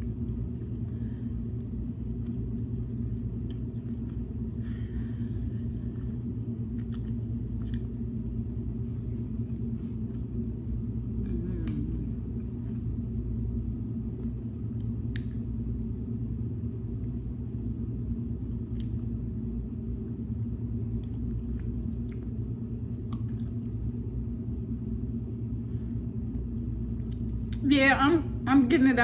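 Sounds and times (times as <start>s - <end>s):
low engine rumble: 0.0s - 29.0s.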